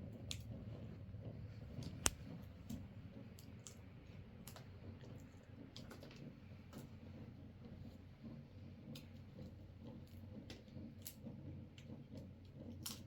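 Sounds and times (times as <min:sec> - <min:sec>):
faint low background hum: 0:00.0 - 0:13.0
light clicks and taps: 0:01.6 - 0:07.3.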